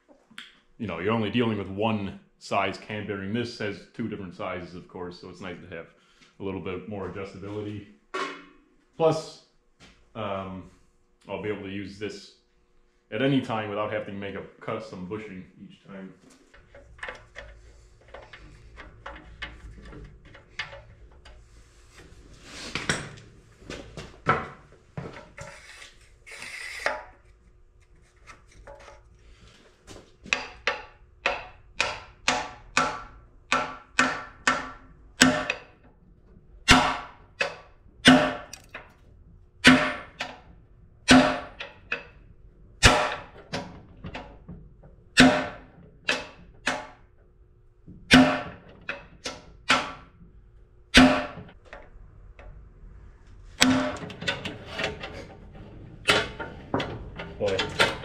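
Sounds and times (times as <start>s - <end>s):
hammer striking metal: 30.3s - 35.6s, 41.1s - 41.6s, 42.8s - 43.3s, 48.1s - 48.6s.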